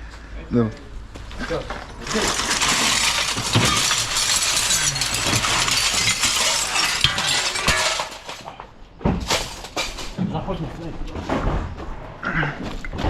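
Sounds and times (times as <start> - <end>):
window glass shattering: 1.8 - 8.5, 9.2 - 10.2.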